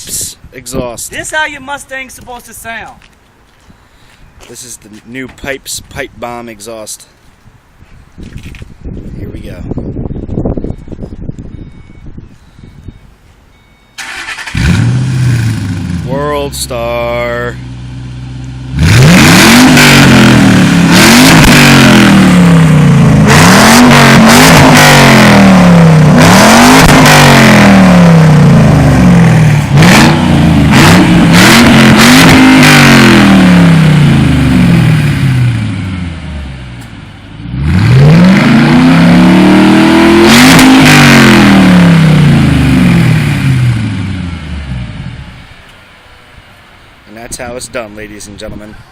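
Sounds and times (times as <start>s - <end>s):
car engine revving: 14.0s - 45.6s.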